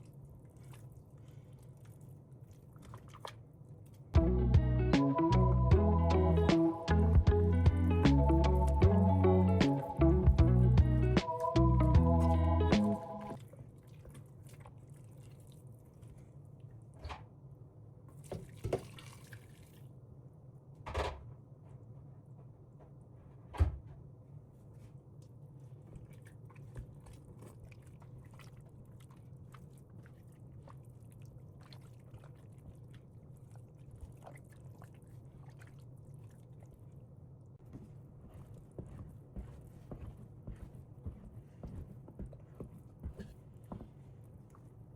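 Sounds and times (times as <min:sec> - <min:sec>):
background music: 0:04.2 - 0:13.4.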